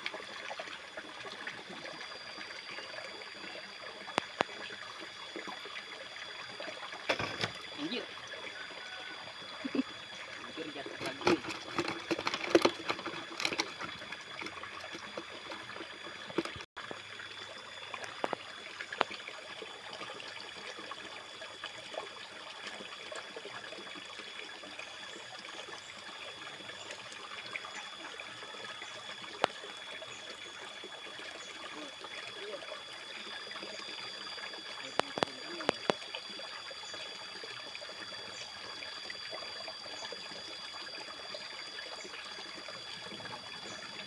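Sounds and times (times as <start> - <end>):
trickle of running water: 0.0 - 44.0
faint high steady tone: 1.3 - 16.7, 25.2 - 44.0.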